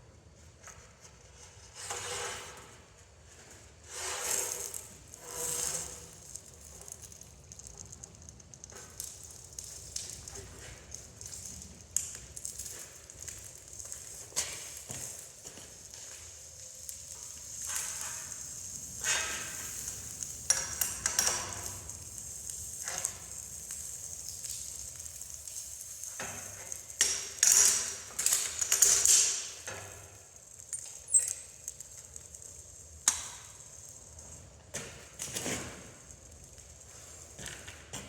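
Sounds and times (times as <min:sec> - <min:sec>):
metallic clatter and scraping: 0:03.9 - 0:10.7
gas forge burner hissing: 0:12.9 - 0:37.9.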